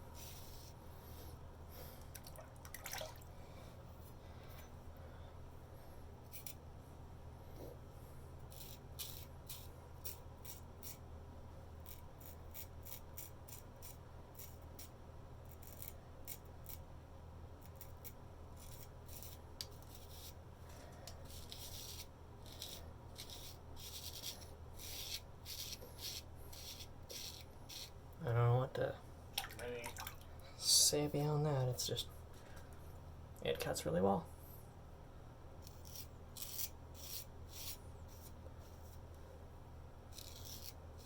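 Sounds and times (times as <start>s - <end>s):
steady low hum: 0.0s - 41.0s
razor scraping strokes: 0.1s - 2.0s, 8.4s - 11.0s, 11.8s - 16.8s, 17.6s - 28.0s, 35.6s - 39.1s, 40.1s - 41.0s.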